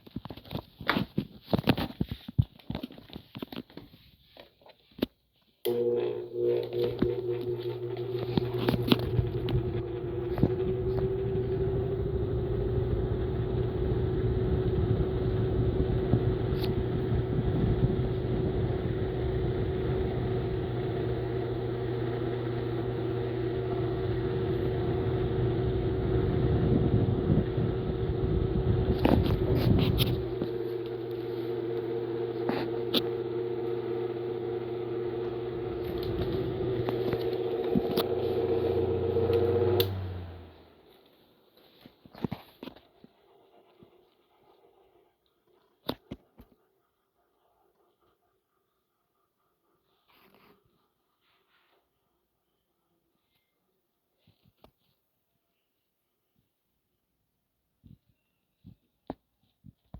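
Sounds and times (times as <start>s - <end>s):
table fan motor hum: 5.7s - 40.8s
fan clicks: 35.7s - 40.3s.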